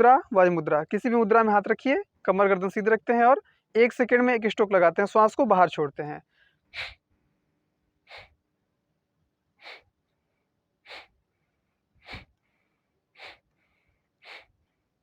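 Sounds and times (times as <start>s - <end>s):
forceful nasal exhalations: 6.4s - 7.1s, 8.1s - 8.4s, 9.6s - 10.0s, 10.8s - 11.2s, 12.0s - 14.7s.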